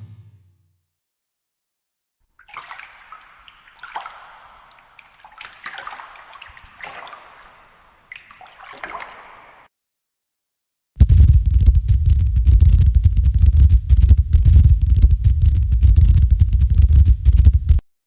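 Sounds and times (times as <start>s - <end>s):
water dripping and gurgling: 2.3s - 9.7s.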